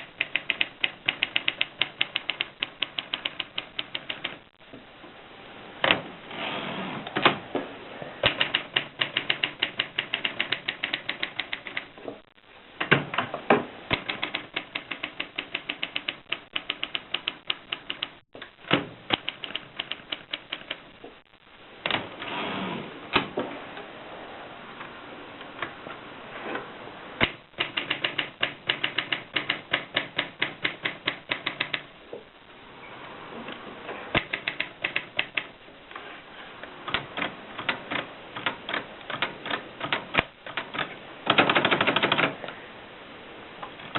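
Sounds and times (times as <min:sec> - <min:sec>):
typewriter keystroke clacks: 0:00.0 - 0:04.4, 0:08.2 - 0:11.9, 0:13.9 - 0:20.8, 0:27.2 - 0:31.9, 0:34.2 - 0:35.5, 0:36.9 - 0:42.4.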